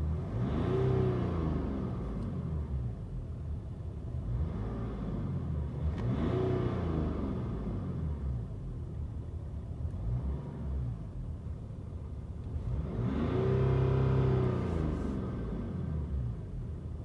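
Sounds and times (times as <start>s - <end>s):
diesel car engine revving: 0.0s - 3.0s, 4.1s - 8.6s, 9.9s - 11.3s, 12.4s - 16.8s.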